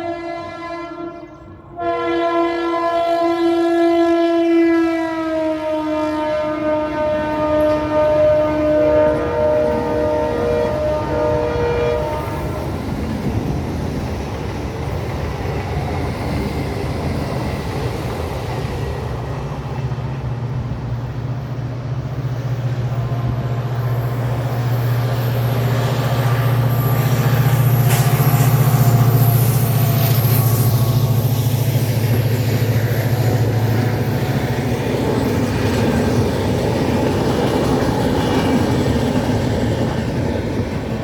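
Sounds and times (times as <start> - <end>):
train horn: 0.0 - 12.9, 22.6 - 39.2
diesel locomotive engine hum: 0.0 - 41.0
passing train clanks: 0.0 - 41.0.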